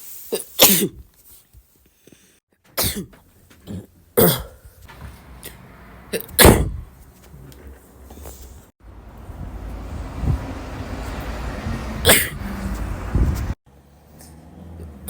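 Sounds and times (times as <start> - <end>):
loud sneezes: 0.3 - 1.0, 2.8 - 6.9, 12.0 - 12.5.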